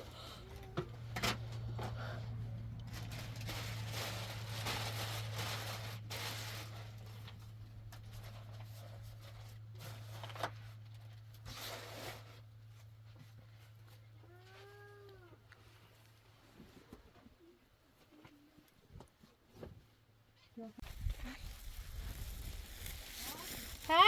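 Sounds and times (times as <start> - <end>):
rustling and tearing: 2.8 - 12.9, 20.8 - 24.0.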